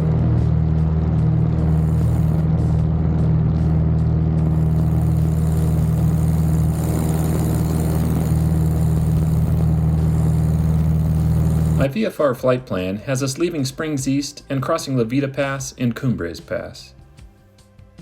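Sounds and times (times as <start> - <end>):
propeller plane engine droning: 0.0 - 14.0.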